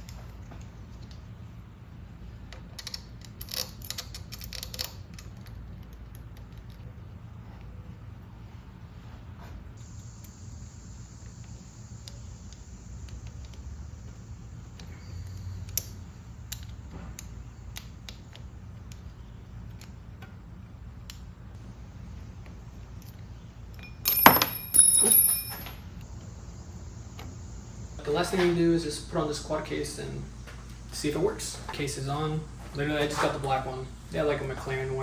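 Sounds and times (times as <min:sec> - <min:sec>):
small metal parts clicking: 0:02.8 - 0:06.8, 0:23.8 - 0:25.8
metallic jangles: 0:23.8 - 0:25.8.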